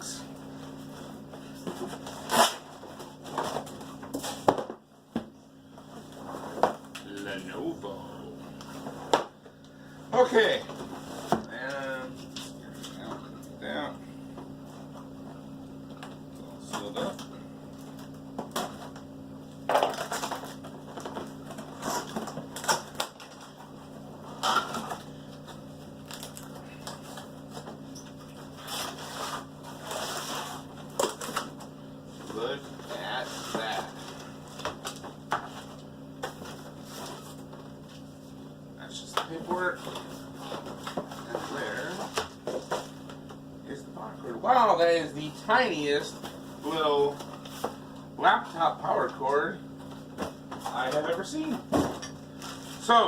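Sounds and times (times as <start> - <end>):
steady low hum: 0.0 - 53.0
cardboard rustling and scraping: 0.5 - 4.8, 5.8 - 7.5, 10.2 - 13.8, 19.7 - 38.4, 39.0 - 43.4, 46.0 - 53.0
packaging crinkling and crackling: 19.7 - 23.7, 24.4 - 27.6.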